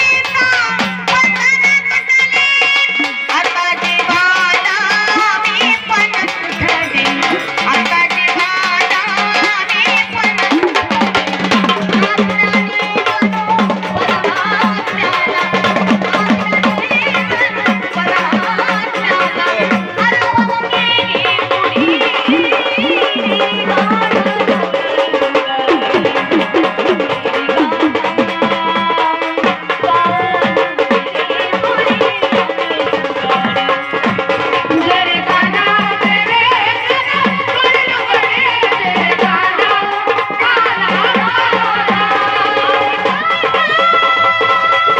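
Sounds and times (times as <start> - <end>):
hand drum rhythm: 0.0 - 44.9
wavering melody: 10.0 - 29.3.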